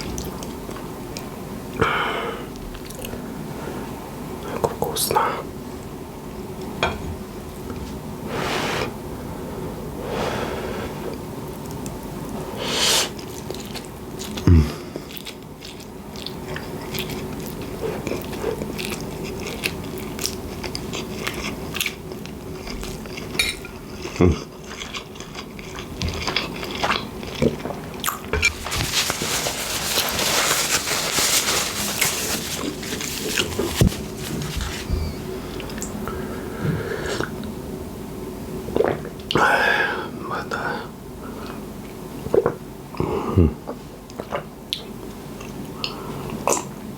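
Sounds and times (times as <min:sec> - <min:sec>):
chewing and wet mouth sounds: 0:13.2 - 0:28.6.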